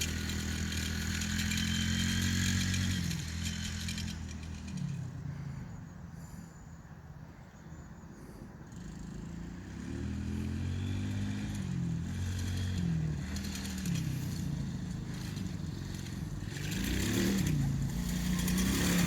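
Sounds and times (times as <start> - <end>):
small atv engine revving: 0.0 - 6.4, 8.2 - 19.0.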